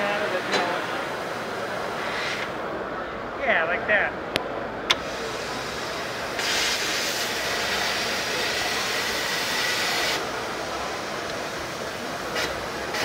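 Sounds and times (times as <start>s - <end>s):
plasma torch hissing: 4.9s - 10.3s.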